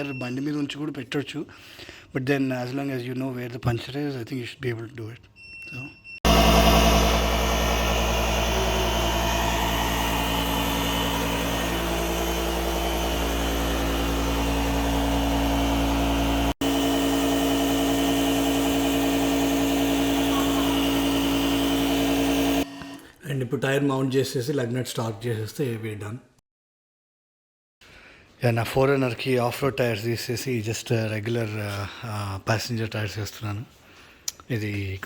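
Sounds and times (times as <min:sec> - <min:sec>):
air compressor humming: 0:06.2 - 0:23.0.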